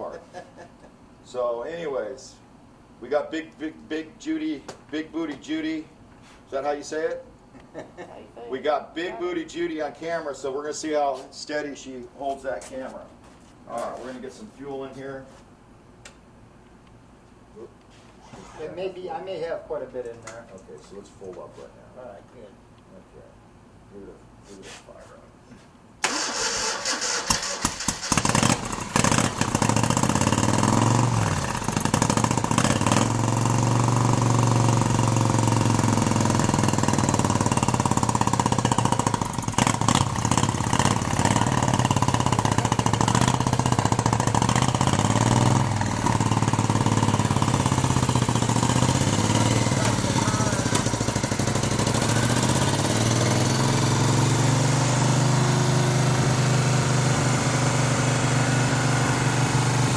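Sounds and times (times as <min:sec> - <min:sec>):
motorcycle engine starting and revving: 0:26.0 - 0:59.9.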